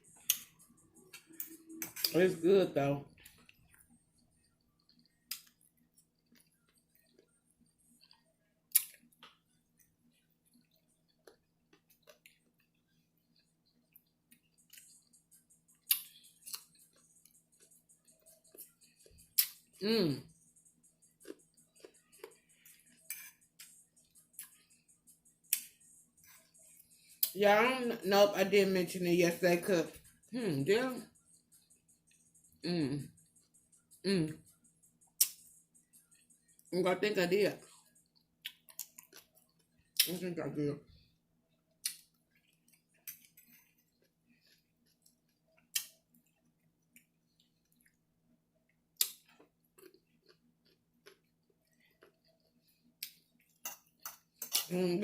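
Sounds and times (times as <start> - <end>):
chewing crunchy food: 3.1 - 19.8, 21.0 - 27.4, 37.6 - 40.1, 40.9 - 54.7.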